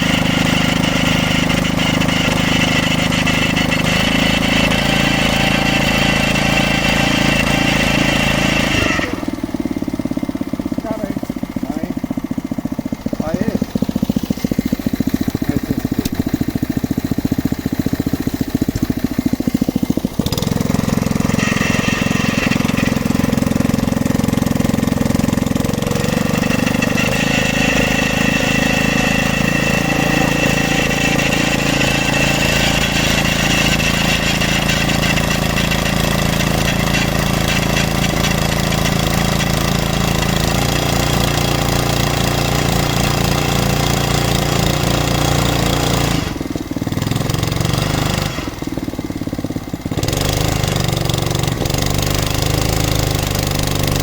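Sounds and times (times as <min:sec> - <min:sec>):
drilling rig engine pulsing: 0:00.0 - 0:54.0
high mechanical whine: 0:08.5 - 0:20.6.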